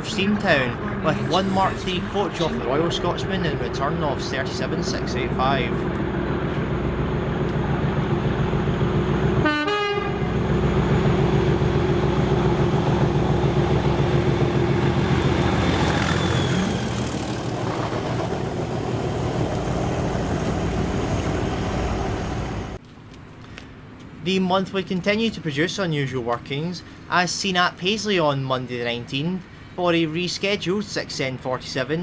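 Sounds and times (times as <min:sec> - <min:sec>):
diesel locomotive engine running: 0:00.0 - 0:22.8
locomotive horn: 0:09.3 - 0:11.7.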